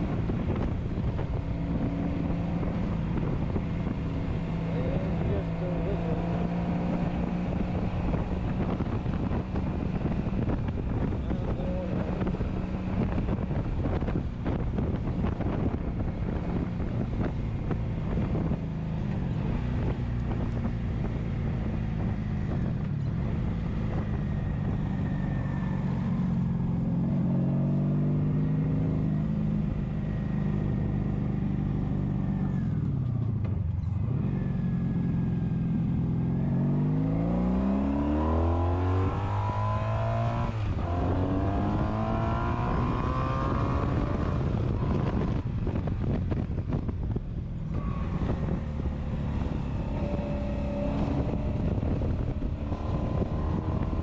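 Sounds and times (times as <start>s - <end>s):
motorcycle engine running: 0.0s - 27.8s, 40.6s - 54.0s
wind on microphone: 0.0s - 34.4s, 35.0s - 54.0s.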